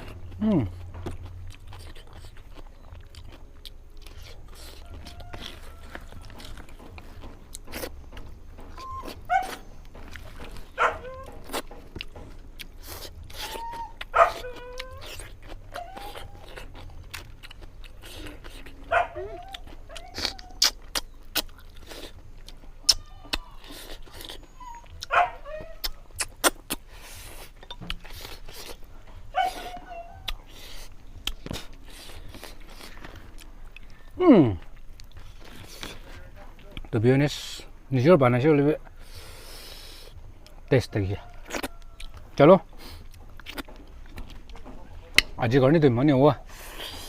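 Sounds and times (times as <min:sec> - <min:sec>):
dog whining: 0:08.7 - 0:11.6, 0:13.1 - 0:17.0, 0:18.7 - 0:21.0, 0:22.9 - 0:26.3, 0:29.3 - 0:30.8.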